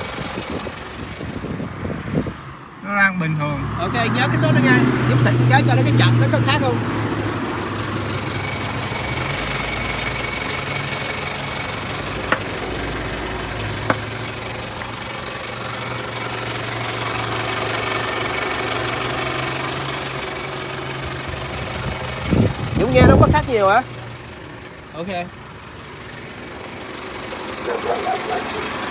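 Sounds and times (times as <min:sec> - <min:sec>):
car engine idling: 0:00.0 - 0:28.9
spray can hissing: 0:09.1 - 0:14.5.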